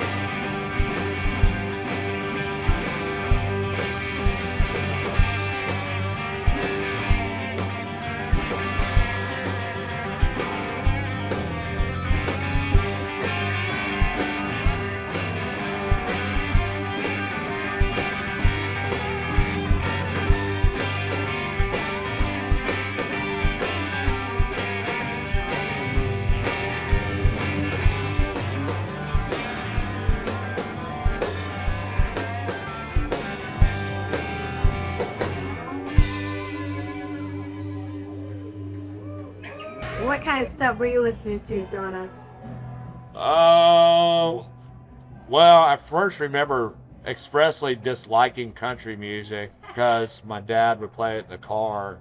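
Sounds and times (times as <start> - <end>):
drum kit: 0.0 - 39.2
electric guitar: 0.0 - 45.3
bass guitar: 0.0 - 52.0.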